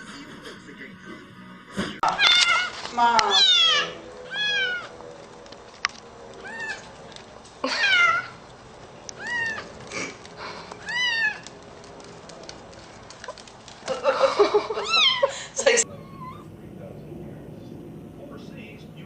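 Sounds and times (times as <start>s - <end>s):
cat meowing: 2.1s - 4.9s, 6.4s - 6.9s, 7.7s - 8.4s, 9.2s - 9.7s, 10.8s - 11.5s, 14.8s - 16.6s.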